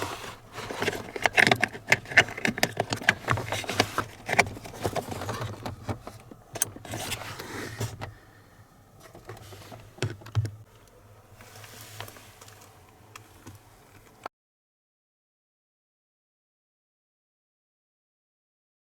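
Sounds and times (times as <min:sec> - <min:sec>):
handling clicks and knocks: 0:00.0 - 0:08.2, 0:09.0 - 0:11.0
rustling: 0:00.0 - 0:08.2, 0:11.4 - 0:14.2
faint low hum: 0:00.0 - 0:14.3.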